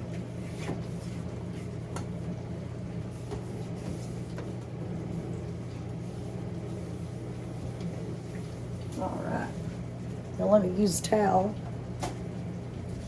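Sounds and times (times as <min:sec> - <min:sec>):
rubbing inside a refrigerator: 0:00.2 - 0:09.8.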